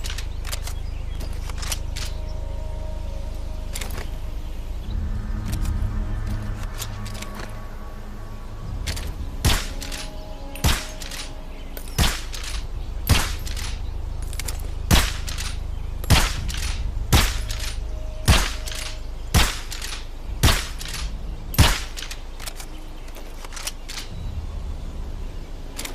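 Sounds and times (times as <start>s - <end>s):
steady low rumble: 0.0s - 25.9s
pistol shots: 14.9s - 21.0s, 21.6s - 22.1s.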